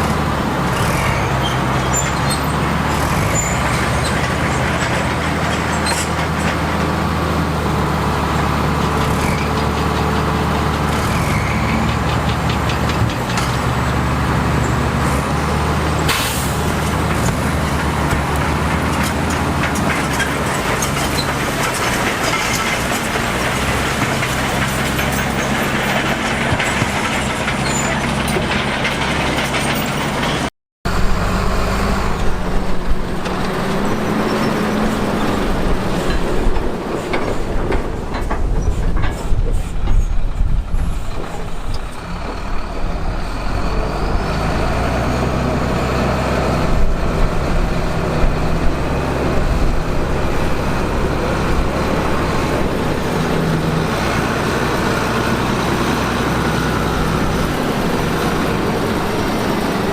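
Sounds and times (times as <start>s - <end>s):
dense clatter: 0.0s - 30.5s
heavy diesel engines running: 0.0s - 59.9s.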